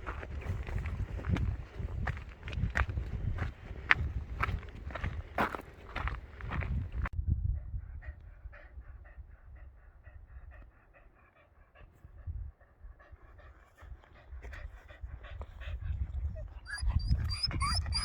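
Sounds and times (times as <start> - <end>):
dog panting rapidly: 7.6 - 18.0.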